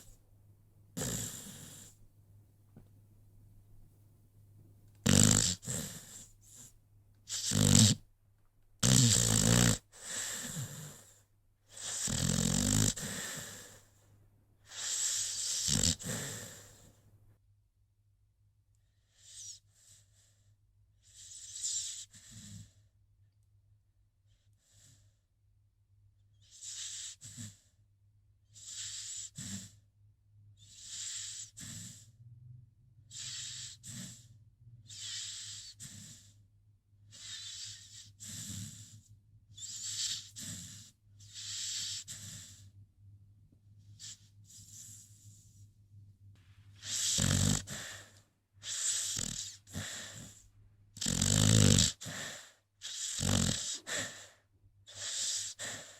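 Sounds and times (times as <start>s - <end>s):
dog snoring: 0.9s - 2.0s, 5.0s - 8.1s, 8.8s - 17.0s, 18.9s - 20.4s, 21.0s - 22.8s, 26.4s - 27.7s, 28.5s - 29.9s, 30.6s - 32.2s, 33.1s - 36.4s, 37.0s - 42.8s, 43.9s - 45.6s, 46.7s - 55.9s.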